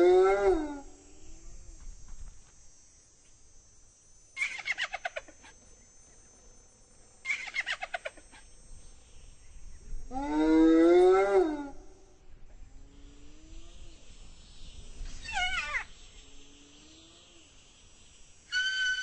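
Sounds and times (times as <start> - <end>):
hyena cackling: 7.2 - 8.5
hyena rising and falling call: 15.2 - 15.9, 18.5 - 19.0.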